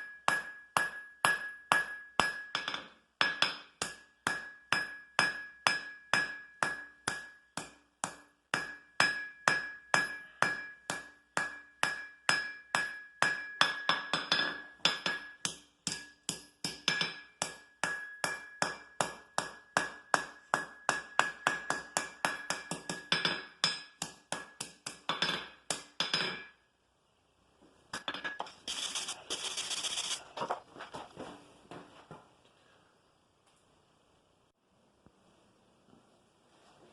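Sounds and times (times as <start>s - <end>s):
hammer ringing on anvil: 0.0s - 26.6s
rough scraping: 28.5s - 31.2s.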